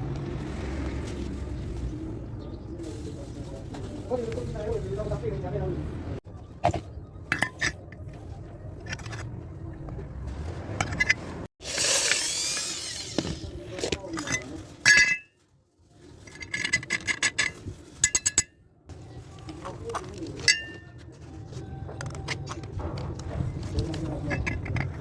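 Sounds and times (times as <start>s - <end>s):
metal tools clinking and knocking: 6.7s - 9.4s, 10.8s - 15.4s, 16.2s - 18.6s, 19.4s - 25.0s.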